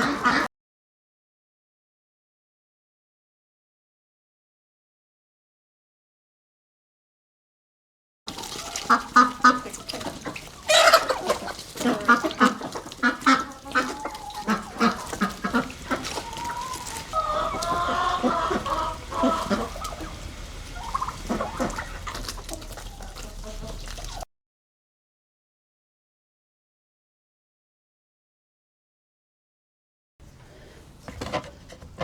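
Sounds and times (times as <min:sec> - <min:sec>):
chickens clucking: 0:00.0 - 0:00.5, 0:08.3 - 0:24.3.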